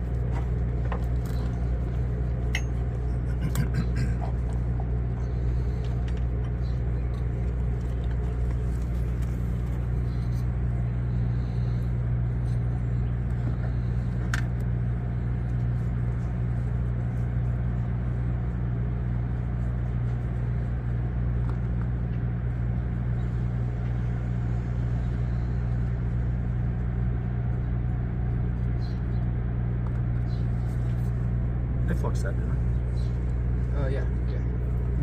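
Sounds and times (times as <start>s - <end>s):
low mechanical hum: 0.0s - 35.0s.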